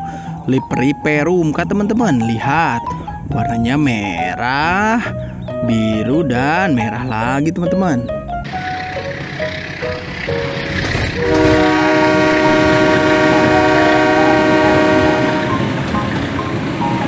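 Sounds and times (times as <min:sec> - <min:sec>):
background music melody: 0:00.0 - 0:17.0
train horn: 0:08.5 - 0:16.4
train rumbling: 0:08.5 - 0:17.0.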